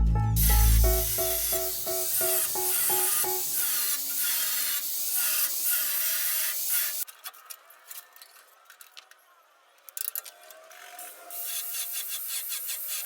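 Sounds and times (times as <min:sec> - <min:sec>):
instrumental rap beat: 0:00.0 - 0:03.4.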